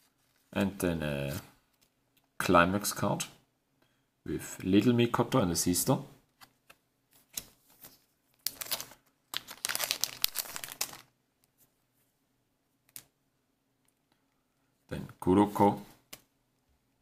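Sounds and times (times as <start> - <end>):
cards rustling: 6.4 - 11.6.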